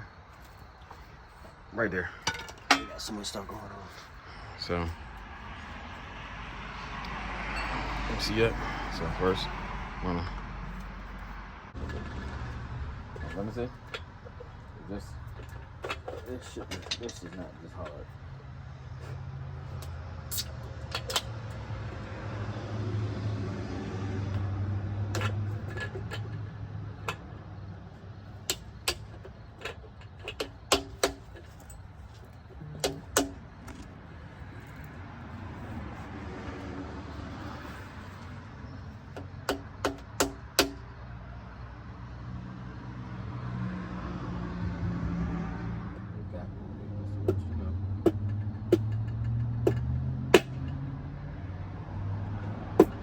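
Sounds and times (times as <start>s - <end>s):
metal tools clinking: 0.4s - 4.2s, 10.7s - 18.4s, 19.0s - 21.6s, 25.1s - 27.4s, 28.3s - 35.0s, 48.1s - 50.8s.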